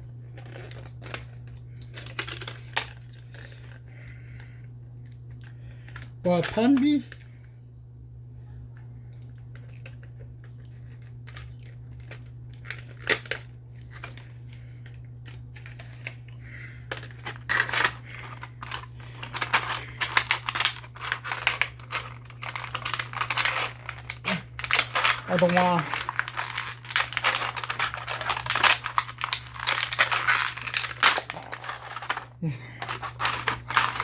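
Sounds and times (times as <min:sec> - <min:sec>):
plastic packaging crinkling: 0:00.4 - 0:03.8, 0:09.5 - 0:34.0
low hum: 0:07.0 - 0:34.0.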